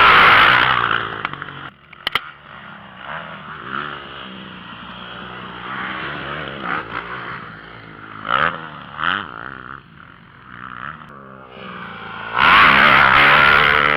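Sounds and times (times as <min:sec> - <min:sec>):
motorcycle engines revving: 0:00.0 - 0:13.9.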